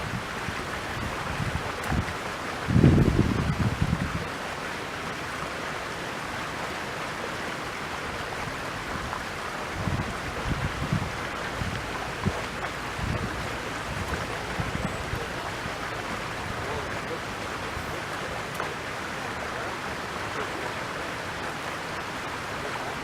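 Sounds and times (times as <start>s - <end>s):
wind buffeting microphone: 0.0s - 4.3s, 8.5s - 18.5s
flowing stream water: 0.0s - 23.0s.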